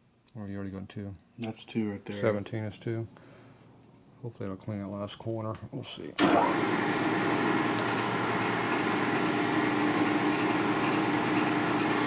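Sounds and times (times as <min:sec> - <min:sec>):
metal-cutting machine humming: 0:06.3 - 0:12.0.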